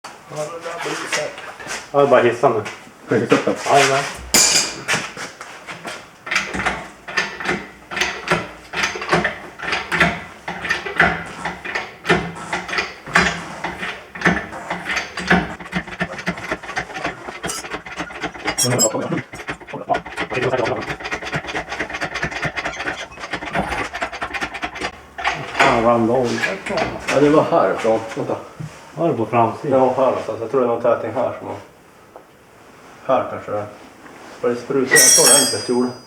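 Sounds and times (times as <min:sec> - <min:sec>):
metal scrapes: 0:17.4 - 0:17.8, 0:18.6 - 0:19.0.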